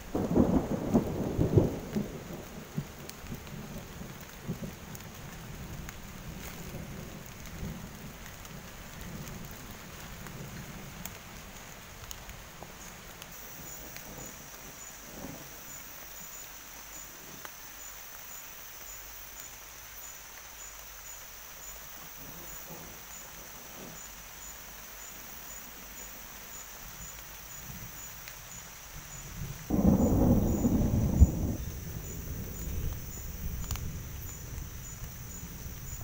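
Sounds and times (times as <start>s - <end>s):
low thunder rumble: 0.0s - 12.2s, 13.4s - 16.2s, 22.2s - 24.1s, 28.8s - 36.0s
wet forest hiss: 0.0s - 36.0s
high insect trill: 12.7s - 36.0s.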